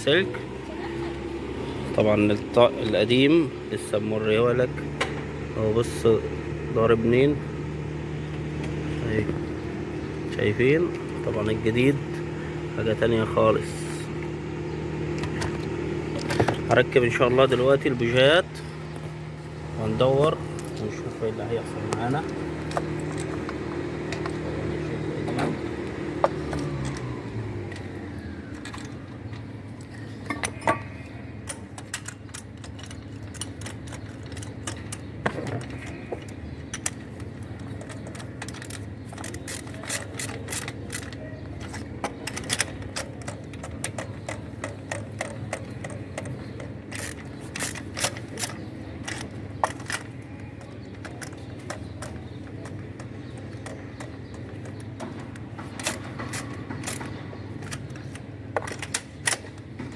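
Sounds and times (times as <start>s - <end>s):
hand tools clicking and clinking: 15.1s - 59.9s
ratchet clicking: 35.7s - 59.7s.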